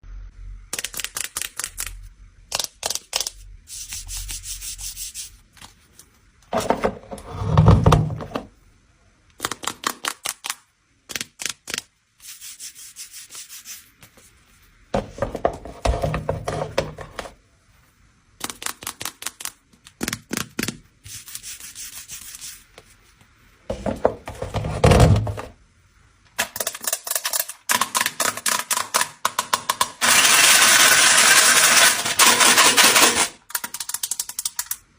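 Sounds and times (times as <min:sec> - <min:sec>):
rapid clicks and taps: 0:18.4 - 0:20.8, 0:31.8 - 0:34.9.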